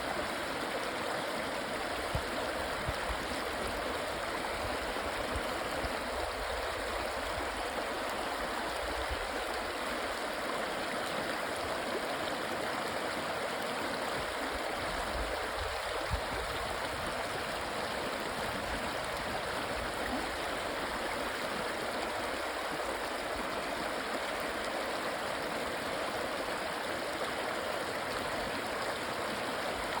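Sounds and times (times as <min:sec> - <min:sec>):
river flowing: 0:00.0 - 0:30.0.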